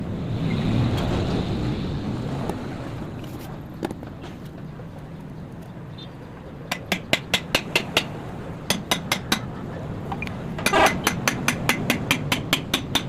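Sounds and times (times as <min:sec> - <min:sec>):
hammer tapping on metal: 0:06.7 - 0:08.1, 0:08.7 - 0:09.5, 0:10.1 - 0:13.0.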